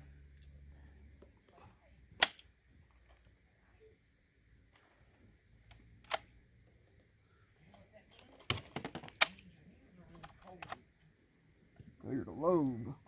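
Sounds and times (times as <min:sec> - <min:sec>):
rifle action metallic clicks: 0:05.7 - 0:06.3.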